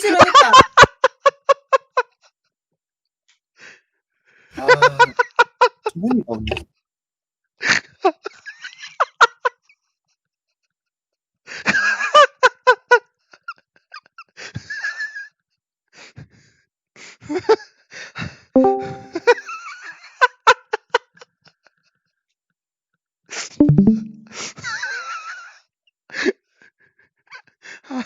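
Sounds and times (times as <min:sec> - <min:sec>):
person laughing: 0:00.0 - 0:00.7, 0:04.6 - 0:05.3.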